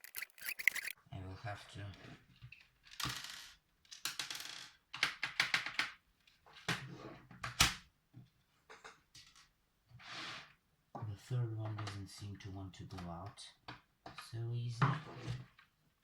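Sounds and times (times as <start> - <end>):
screwdriver scraping screws: 0.0 - 1.0.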